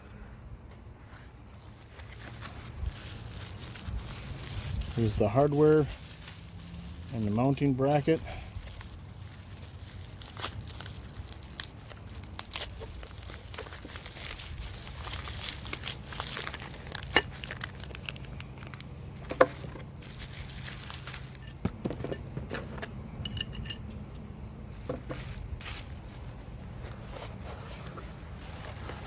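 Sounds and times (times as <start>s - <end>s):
small metal parts clinking: 4.4s - 26.0s.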